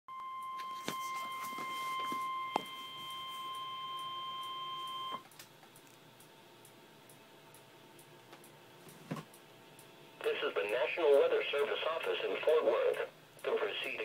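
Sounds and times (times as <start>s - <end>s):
weather radio alarm tone: 0.1s - 5.2s.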